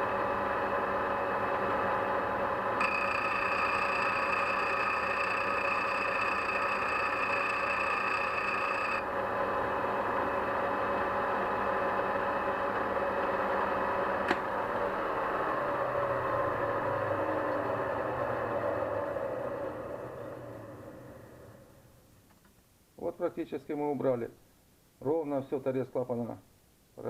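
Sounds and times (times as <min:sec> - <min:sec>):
high steady whine: 0:00.0 - 0:17.9
bench grinder running: 0:00.1 - 0:14.1.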